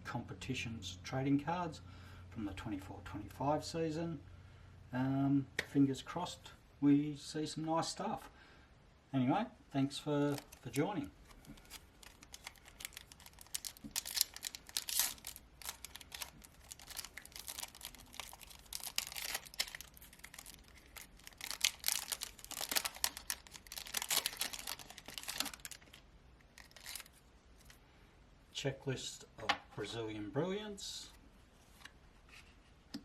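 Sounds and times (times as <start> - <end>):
cards handled: 10.2 - 26.0, 26.6 - 27.8
card pack wrapper crinkling: 10.2 - 27.8.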